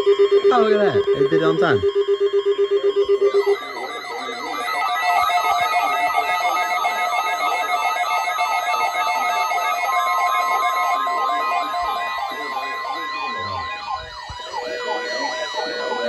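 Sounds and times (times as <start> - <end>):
electronic sirens wailing: 0.0 - 16.0
steady alarm tones: 0.0 - 16.0
steady high tone: 0.0 - 16.0.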